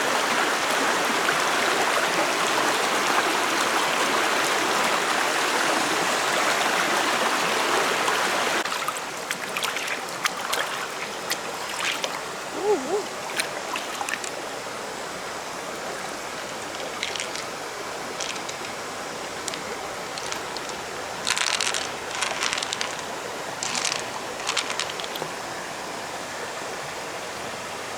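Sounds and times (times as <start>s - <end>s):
stream water rushing: 0.0s - 27.9s
water splashes: 5.7s - 25.4s.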